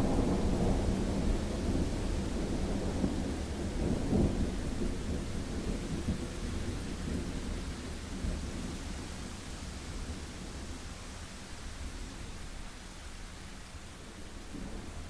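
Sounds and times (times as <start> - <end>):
thunder rumbling: 0.0 - 8.8
heavy rain: 0.0 - 15.0.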